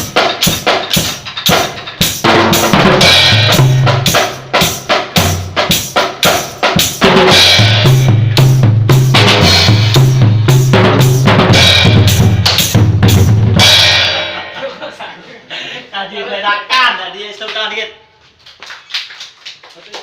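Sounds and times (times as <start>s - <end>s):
cymbals: 0.0s - 14.8s
drum kit playing: 0.0s - 14.9s
bass line: 2.2s - 4.6s, 7.0s - 14.2s.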